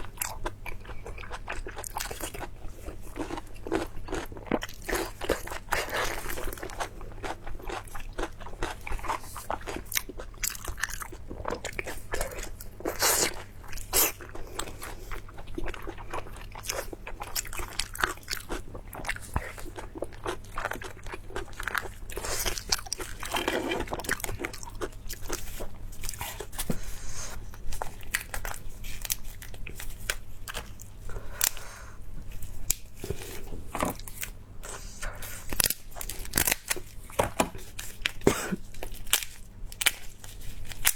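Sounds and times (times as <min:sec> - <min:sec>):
person crunching and chewing food: 0:00.0 - 0:40.9.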